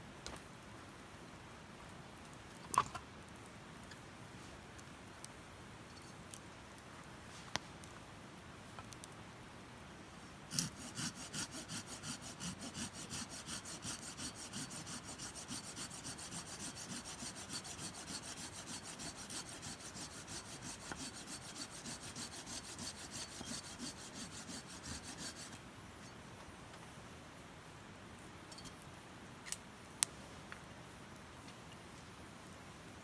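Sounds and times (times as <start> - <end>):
hand saw cutting wood: 10.5 - 25.6.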